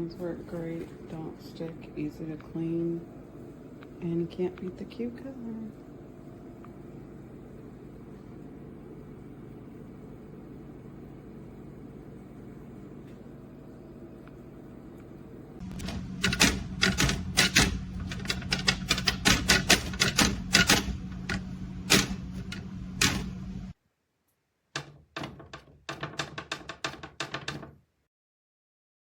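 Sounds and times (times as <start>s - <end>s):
steady low hum: 0.0s - 23.8s
rapid sharp clicks and taps: 15.6s - 23.4s, 24.8s - 27.7s.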